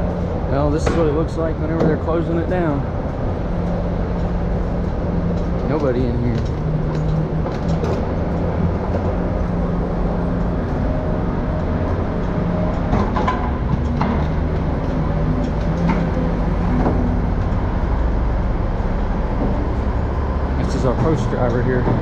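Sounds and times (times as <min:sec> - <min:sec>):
vehicle engine running: 0:00.0 - 0:22.0
short knocks or clanks: 0:00.7 - 0:02.3.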